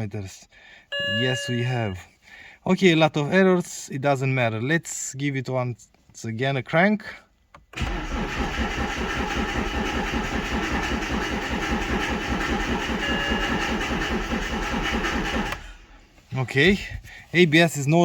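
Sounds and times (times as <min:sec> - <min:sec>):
car engine cranking by starter motor: 0:07.8 - 0:16.0.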